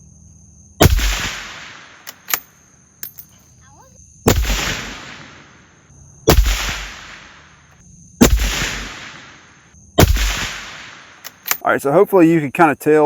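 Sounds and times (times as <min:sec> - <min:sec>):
suppressed rifle shots with echo: 0:00.8 - 0:02.4, 0:04.3 - 0:05.6, 0:06.3 - 0:07.4, 0:08.2 - 0:11.6.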